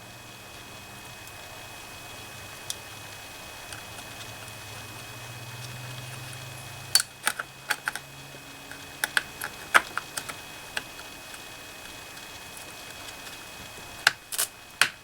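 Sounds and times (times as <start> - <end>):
plastic clicks and taps: 8.8 - 11.0.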